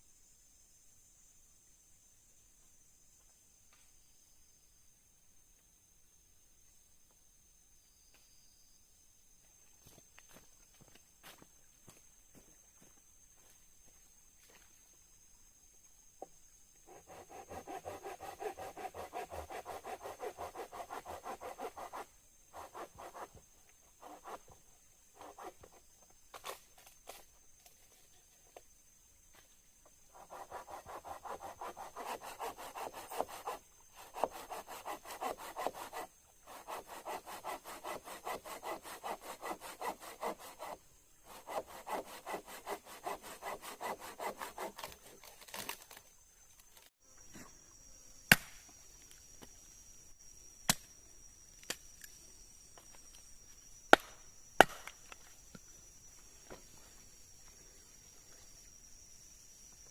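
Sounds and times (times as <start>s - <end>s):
hand saw cutting wood: 16.9s - 23.4s, 24.0s - 24.6s, 25.2s - 25.8s, 30.1s - 46.0s.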